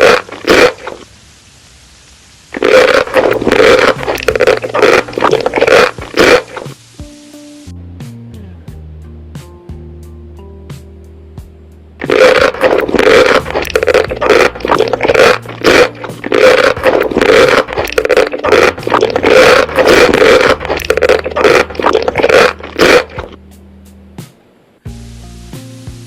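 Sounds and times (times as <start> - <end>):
food crunching being chewed: 0.0 - 1.1, 2.5 - 6.8, 12.0 - 23.4
faint background music: 2.6 - 26.0.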